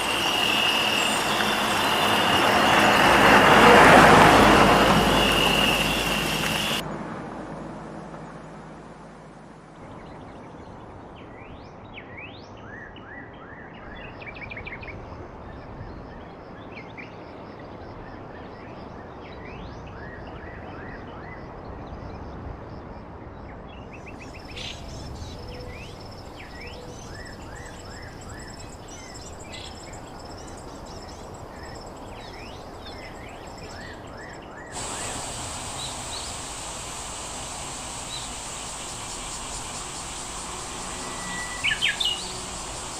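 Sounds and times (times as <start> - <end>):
high insect-like hiss: 0.0 - 6.8, 24.2 - 42.9
songbirds chirping: 0.0 - 6.8, 24.0 - 42.9
steady rushing background: 0.0 - 6.8, 34.8 - 42.9
thin high steady buzz: 0.0 - 6.8, 34.8 - 42.9.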